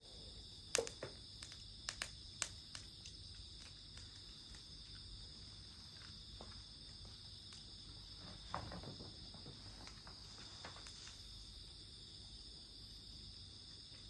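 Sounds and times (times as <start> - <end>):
insects chirring: 0.0 - 14.0
campfire crackling and popping: 0.7 - 5.2.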